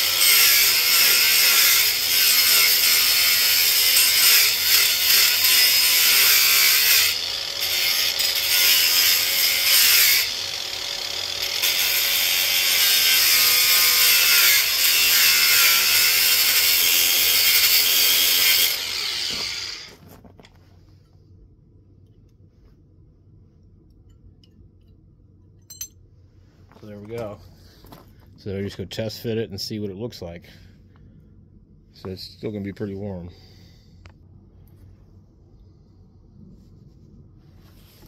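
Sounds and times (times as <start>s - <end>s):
cutoff wheel grinding metal: 0.0s - 20.0s.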